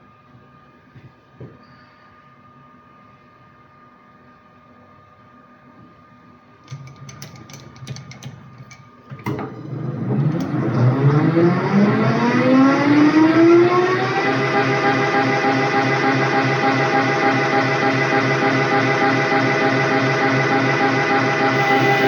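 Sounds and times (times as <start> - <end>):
electric motor whine spinning up: 9.6 - 22.0.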